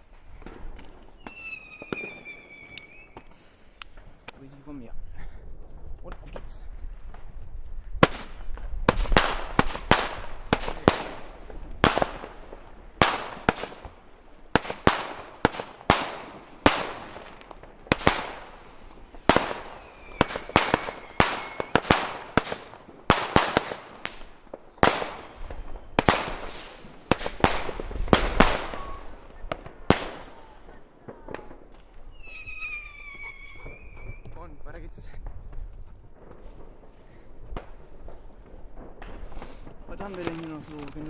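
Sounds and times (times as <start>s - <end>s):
firework bangs with crackle: 0.0s - 41.0s
firework whistle: 1.0s - 4.3s, 19.6s - 22.0s, 28.2s - 29.5s, 32.0s - 34.6s.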